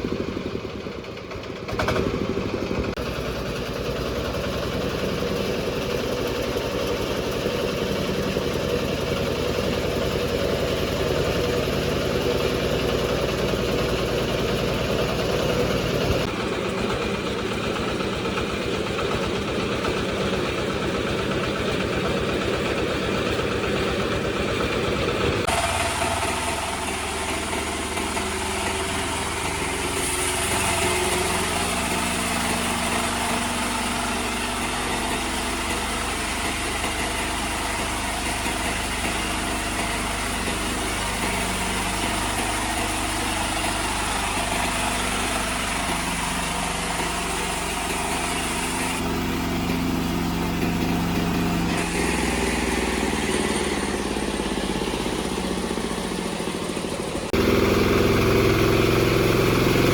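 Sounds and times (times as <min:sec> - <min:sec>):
diesel engine drone: 0:00.0 - 0:59.9
band saw hissing: 0:25.4 - 0:56.4.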